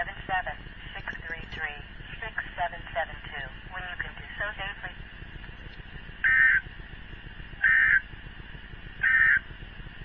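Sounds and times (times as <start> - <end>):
screechy digital data tones: 6.2 - 6.7, 7.6 - 8.0, 9.0 - 9.5.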